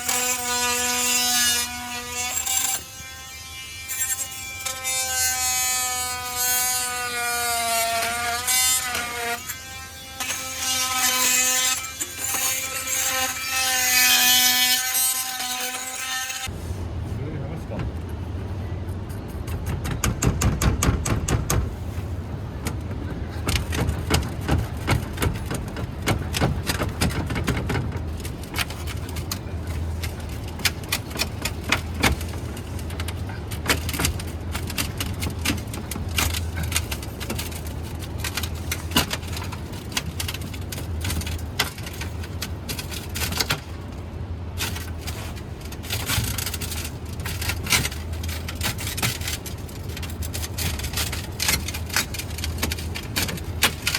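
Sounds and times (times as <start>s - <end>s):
steady low hum: 16.4s - 53.9s.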